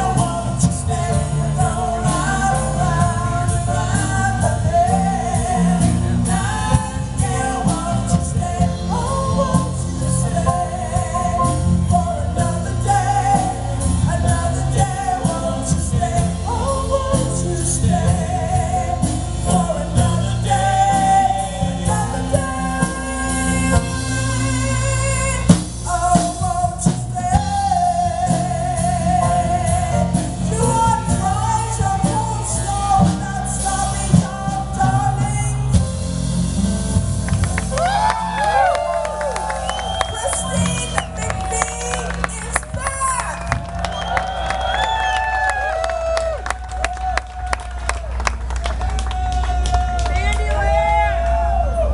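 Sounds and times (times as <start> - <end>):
woman singing: 0.0 - 35.8
live band playing pop song: 0.0 - 51.9.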